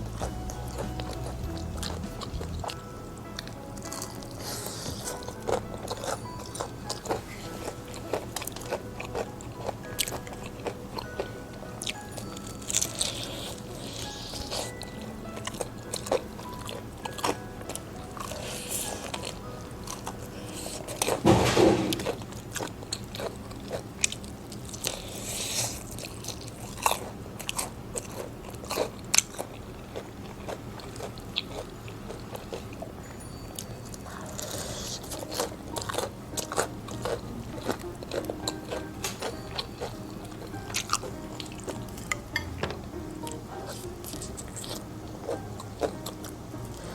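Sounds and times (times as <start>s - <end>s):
background music: 0.0s - 24.2s, 30.3s - 46.9s
crunching fried chicken: 0.0s - 42.4s, 43.3s - 46.9s.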